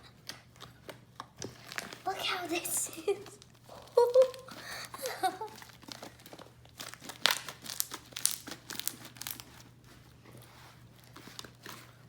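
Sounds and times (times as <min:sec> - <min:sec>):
slime crackling and snapping: 0:05.2 - 0:09.6.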